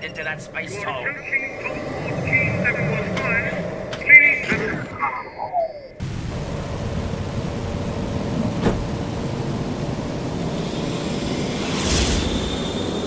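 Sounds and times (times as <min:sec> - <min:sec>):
spaceship engine rumble: 0:00.0 - 0:12.9
hiss: 0:10.3 - 0:13.0.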